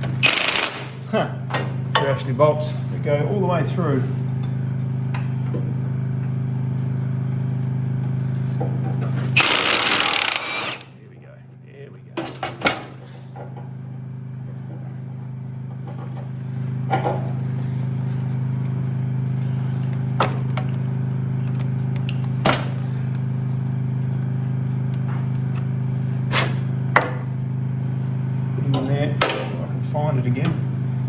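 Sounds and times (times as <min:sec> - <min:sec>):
power tool motor running: 0:00.0 - 0:01.4, 0:09.0 - 0:11.0.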